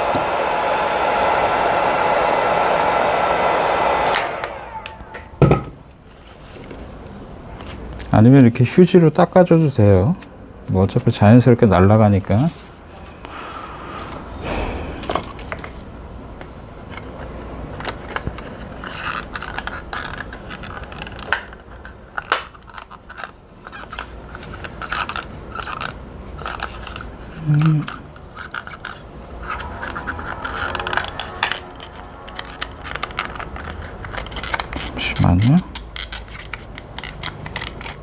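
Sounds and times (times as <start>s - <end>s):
scraping and rubbing: 28.2s - 35.4s.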